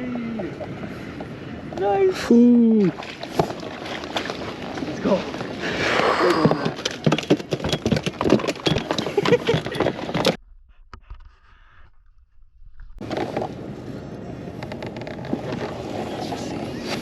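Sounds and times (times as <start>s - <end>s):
wind and water rushing: 0.0s - 10.4s.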